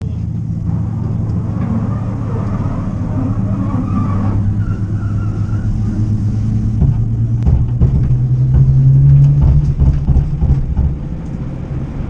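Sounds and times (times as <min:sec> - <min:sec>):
electric vehicle humming: 0:00.0 - 0:12.0.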